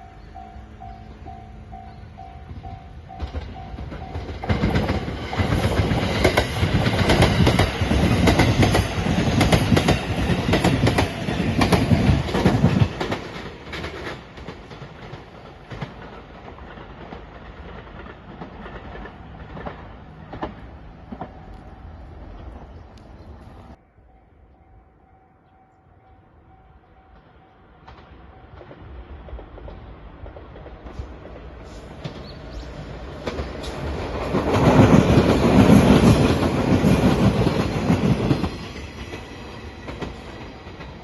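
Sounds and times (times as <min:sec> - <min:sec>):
train wheels clacking over rail joints: 0:03.1 - 0:21.6, 0:27.8 - 0:41.0.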